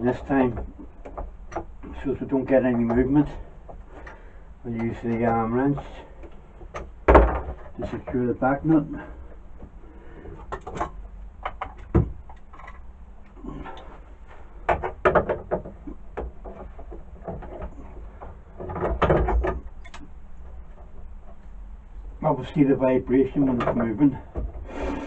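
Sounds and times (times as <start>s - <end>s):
handling clunks: 0.0s - 9.8s, 23.4s - 24.7s.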